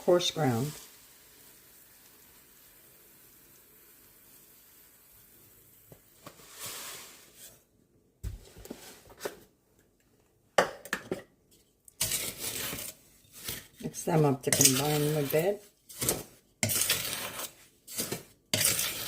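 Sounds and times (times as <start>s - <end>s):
salt pouring into bowl: 0.5s - 7.4s.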